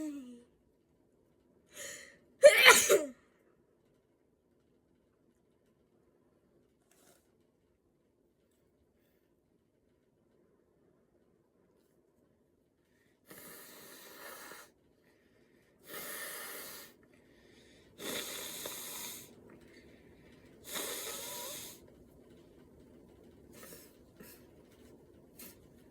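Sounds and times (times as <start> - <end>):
person blowing nose: 18.0 - 19.2, 20.7 - 21.8.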